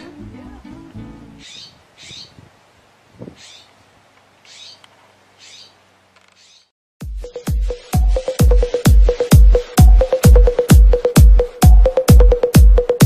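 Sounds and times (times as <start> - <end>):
bird calling: 1.4 - 2.4, 3.2 - 3.8, 4.4 - 6.7.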